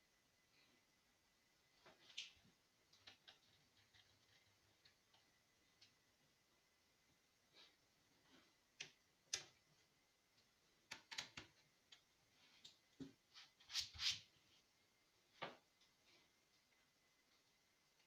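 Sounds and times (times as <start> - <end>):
faint irregular clicks and taps: 1.8 - 6.3, 7.6 - 13.3.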